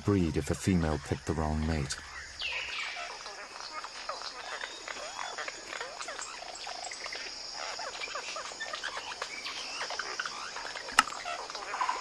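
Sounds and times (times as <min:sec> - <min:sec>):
high insect drone: 0:00.0 - 0:12.0.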